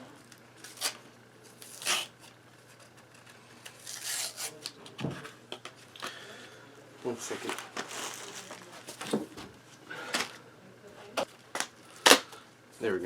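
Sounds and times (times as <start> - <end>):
packaging rustling: 7.1 - 9.2
plastic packaging scraping: 7.2 - 9.1.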